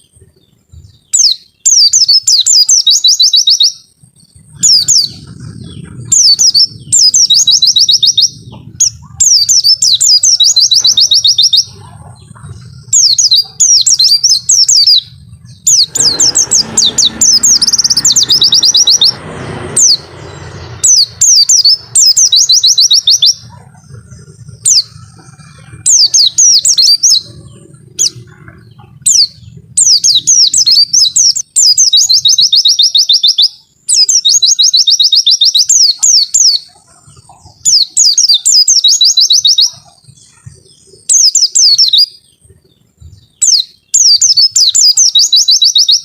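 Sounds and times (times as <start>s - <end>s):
bird singing rapid high notes: 0.0s - 46.0s
broad background noise: 0.0s - 46.0s
low hum: 3.9s - 31.7s.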